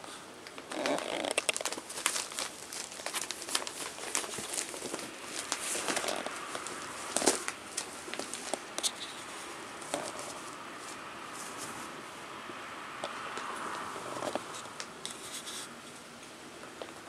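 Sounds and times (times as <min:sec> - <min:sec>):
puppies crinkling a toy: 0:00.1 - 0:11.9.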